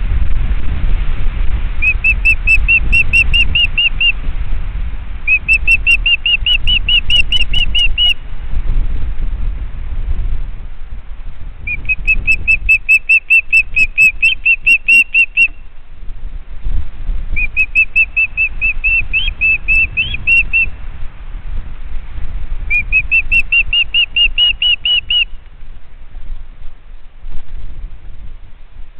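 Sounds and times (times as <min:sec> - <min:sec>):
low handling or wind rumble: 0:00.0 - 0:28.9
bird whistling rapid notes: 0:01.8 - 0:04.2, 0:05.3 - 0:08.2, 0:11.7 - 0:15.6, 0:17.4 - 0:20.7, 0:22.7 - 0:25.4.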